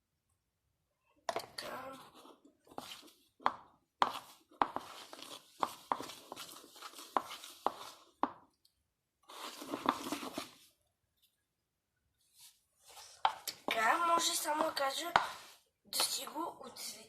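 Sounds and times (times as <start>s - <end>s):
hands kneading sticky slime: 2.0s - 10.7s, 12.4s - 16.3s.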